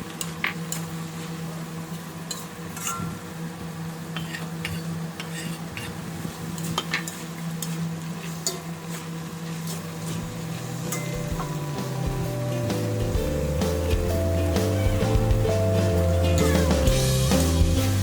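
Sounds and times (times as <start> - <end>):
spatula scraping a metal pan: 4.2 - 6.0
vegetables sizzling in a pan: 6.3 - 18.0
steady low hum: 10.0 - 18.0.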